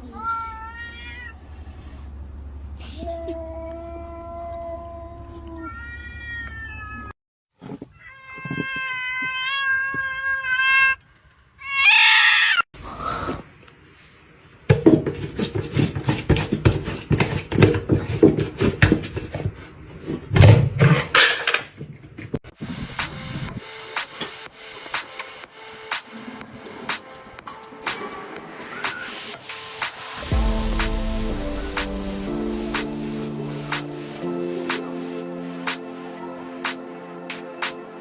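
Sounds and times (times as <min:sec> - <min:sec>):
cats meowing: 0:00.0 - 0:01.4, 0:03.4 - 0:07.1, 0:07.8 - 0:11.0, 0:11.6 - 0:12.6, 0:28.6 - 0:29.4.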